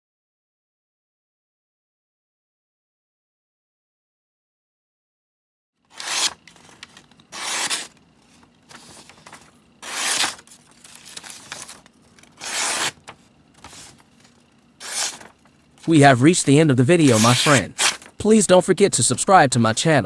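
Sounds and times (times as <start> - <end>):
knife scraping through sharpener: 6.0 - 6.4, 7.3 - 7.9, 9.8 - 10.4, 12.4 - 13.0, 14.8 - 15.2, 17.0 - 18.0.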